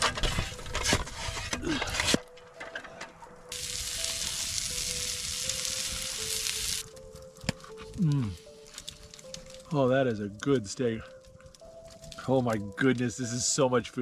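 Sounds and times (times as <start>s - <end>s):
scraping with sharp knocks: 0.0s - 3.2s
steak sizzling: 3.5s - 9.8s.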